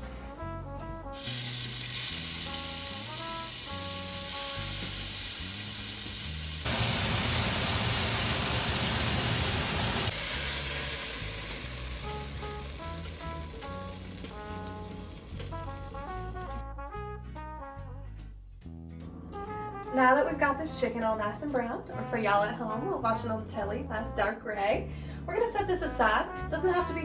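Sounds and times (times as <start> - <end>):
chicken sizzling in hot oil: 1.2 - 16.6.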